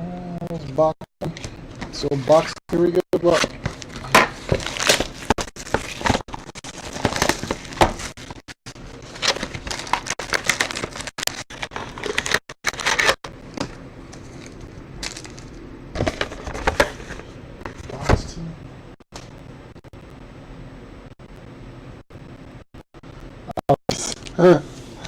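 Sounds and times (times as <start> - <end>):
plastic wrapping crinkling and tearing: 3.2 - 13.2, 14.1 - 17.2.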